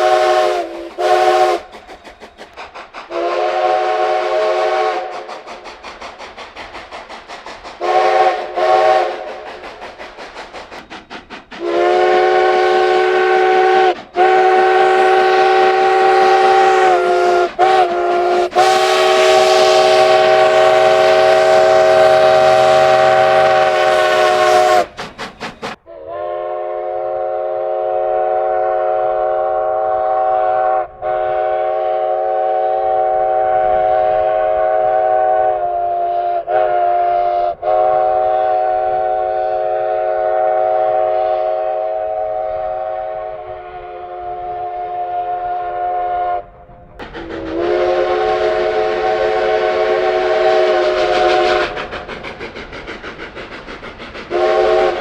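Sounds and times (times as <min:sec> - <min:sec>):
locomotive chime horn blasts: 0:00.0 - 0:01.6, 0:03.1 - 0:05.1, 0:11.6 - 0:24.9, 0:25.9 - 0:46.5, 0:47.6 - 0:51.6, 0:54.3 - 0:55.0.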